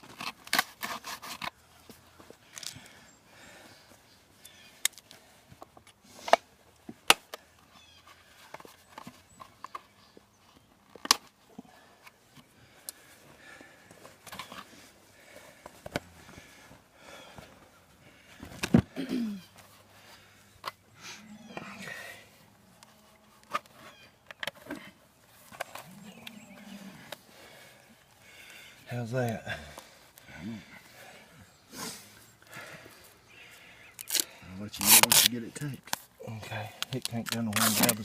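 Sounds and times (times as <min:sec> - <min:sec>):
quiet handling rustles: 0:21.5 - 0:38.0.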